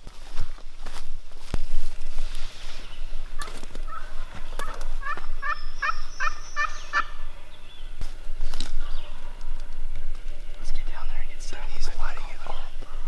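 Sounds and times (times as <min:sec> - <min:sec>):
turkey-style yelping calls: 0:03.0 - 0:07.6.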